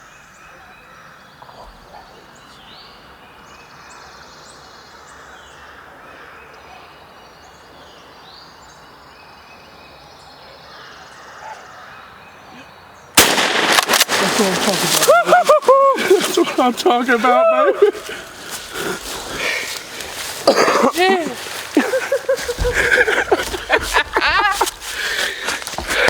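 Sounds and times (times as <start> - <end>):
songbirds singing: 0.0 - 26.0
shotgun blast: 13.2 - 15.1.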